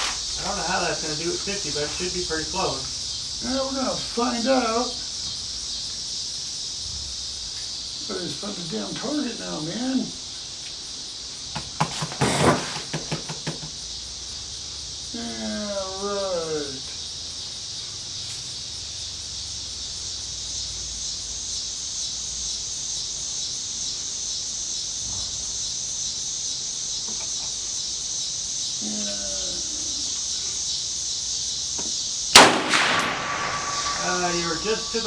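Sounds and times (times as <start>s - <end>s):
insects chirping: 0.0s - 35.0s
gunshot: 32.3s - 35.0s.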